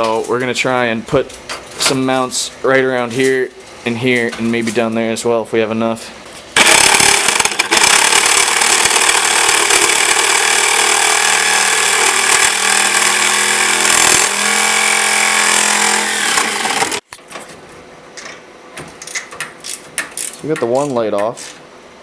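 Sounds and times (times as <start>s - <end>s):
power tool whining on steel: 6.6s - 17.0s.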